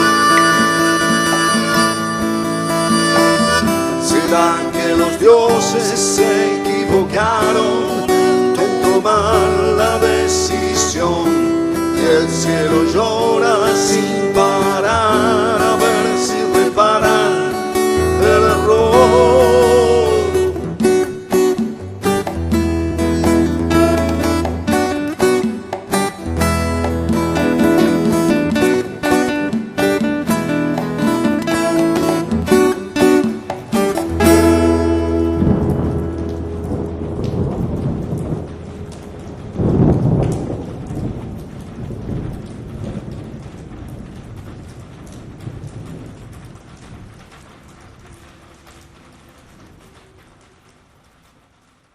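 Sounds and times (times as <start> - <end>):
person singing with vibrato: 0.0 - 21.3
strummed acoustic guitar: 0.0 - 38.9
steady rain: 0.0 - 51.9
low thunder rumble: 34.4 - 51.1.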